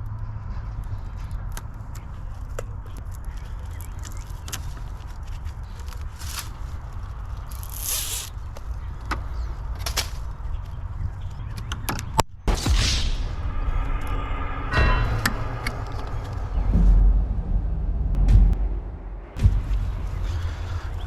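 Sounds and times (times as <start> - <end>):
low rumble: 8.4 - 21.0.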